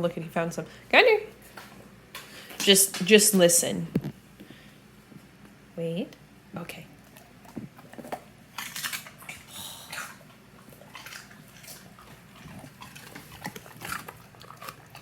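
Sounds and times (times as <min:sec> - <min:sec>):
dog crunching celery: 0:07.0 - 0:15.0.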